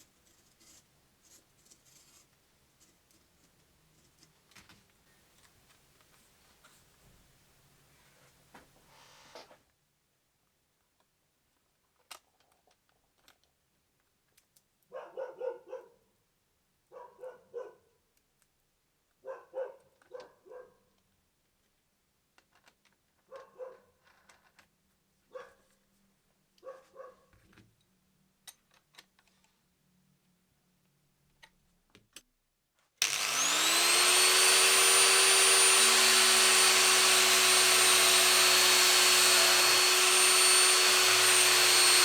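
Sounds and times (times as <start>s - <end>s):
faint dog barking: 14.9s - 16.1s, 16.9s - 18.0s, 19.2s - 21.0s, 23.3s - 24.0s, 25.3s - 25.7s, 26.6s - 27.4s.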